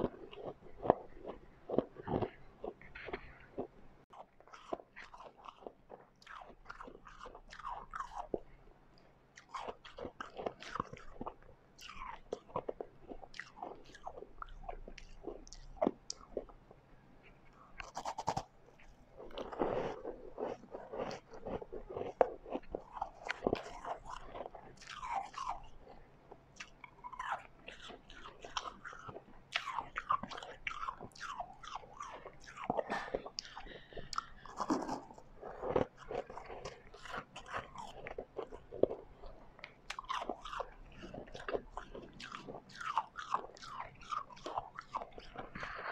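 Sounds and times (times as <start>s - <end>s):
person chewing crunchy ice: 0.0s - 8.5s, 9.4s - 16.5s, 17.5s - 45.9s.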